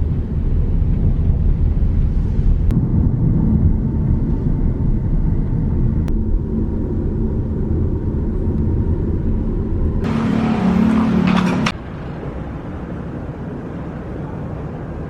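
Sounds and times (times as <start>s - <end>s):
car cabin rumble: 10.0s - 12.9s.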